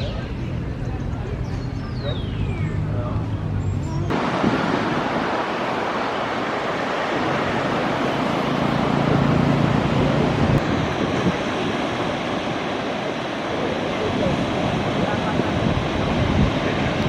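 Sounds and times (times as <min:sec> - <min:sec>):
wind on microphone: 0:00.0 - 0:17.0
sea surf washing on shore: 0:04.1 - 0:17.0.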